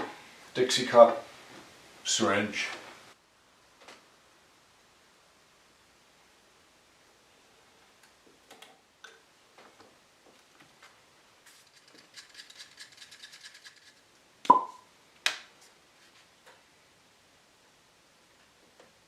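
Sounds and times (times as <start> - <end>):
small objects clicking: 11.6 - 14.1.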